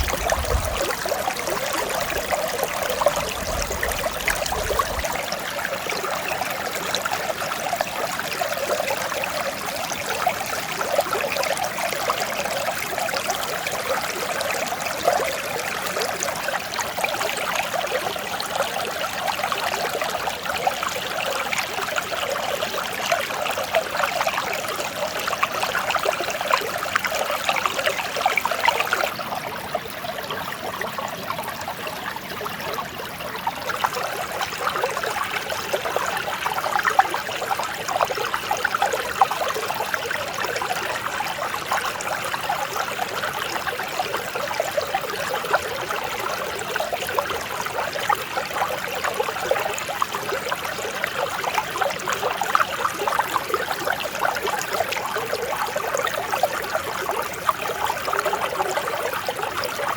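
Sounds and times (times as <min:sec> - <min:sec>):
stream babbling: 0:00.0 - 0:59.9.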